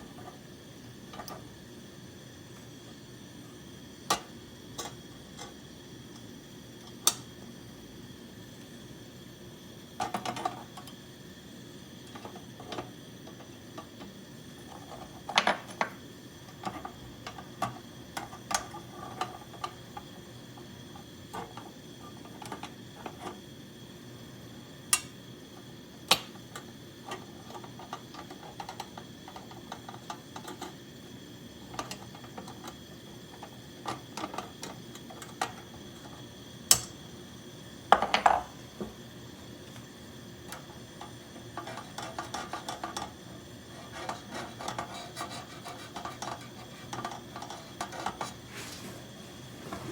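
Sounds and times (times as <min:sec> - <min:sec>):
camp stove hiss: 0:00.0 - 0:49.9.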